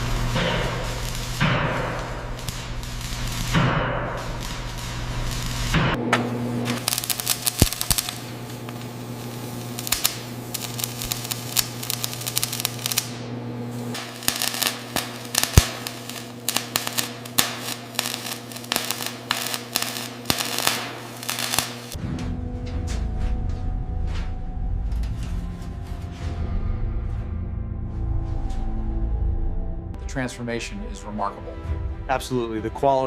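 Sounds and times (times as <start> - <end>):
low rumble: 0.0 - 6.6, 22.0 - 30.8
low machine hum: 0.0 - 30.0.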